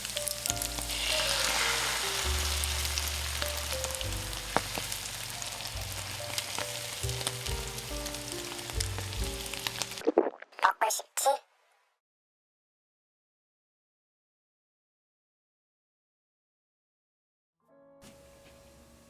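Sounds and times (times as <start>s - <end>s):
background music: 0.0s - 10.0s, 17.7s - 19.0s
food sizzling on a griddle: 0.0s - 10.0s.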